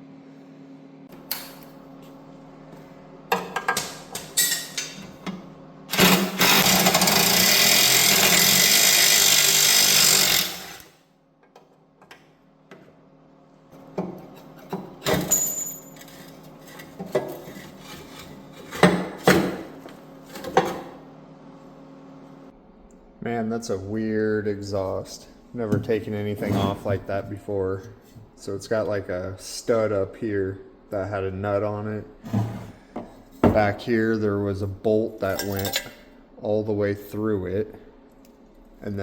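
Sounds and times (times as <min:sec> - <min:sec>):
handheld power tool running: 0:05.9 - 0:11.0
metallic clinks of tools: 0:15.3 - 0:16.0.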